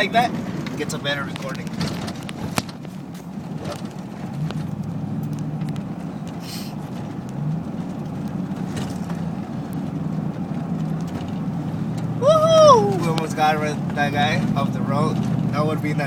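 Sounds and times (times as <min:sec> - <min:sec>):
car engine and road hum: 0:00.0 - 0:16.0
short hiss: 0:06.4 - 0:06.8.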